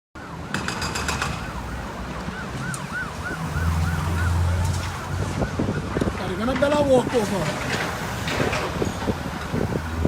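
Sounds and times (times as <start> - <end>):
siren wailing: 0.2 - 6.2
road traffic hum: 0.2 - 10.0.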